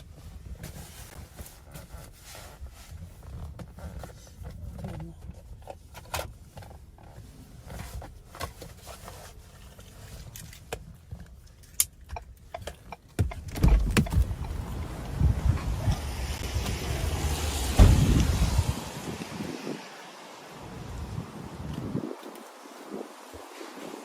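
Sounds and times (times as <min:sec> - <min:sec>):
clicks and knocks: 0:12.0 - 0:14.6
wind buffeting microphone: 0:13.2 - 0:24.0.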